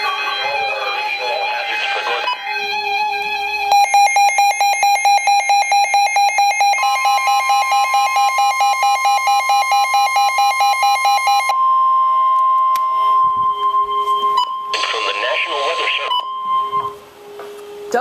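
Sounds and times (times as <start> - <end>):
steady warning alarm tone: 3.6 - 18.0
rapid electronic alert beeping: 3.7 - 11.5, 13.3 - 17.0.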